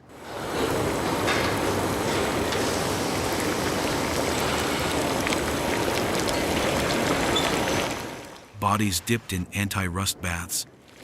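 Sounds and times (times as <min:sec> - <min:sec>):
rushing hissing water: 0:00.2 - 0:08.4.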